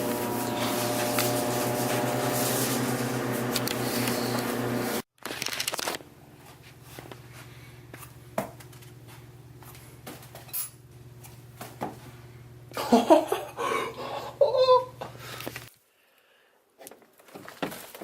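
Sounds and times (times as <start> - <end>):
loud electric hum: 0.0 - 5.0.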